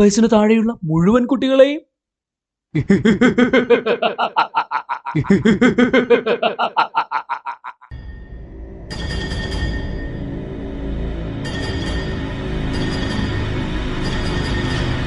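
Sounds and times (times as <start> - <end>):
man laughing evilly: 2.8 - 7.9
low scary music: 7.9 - 15.0.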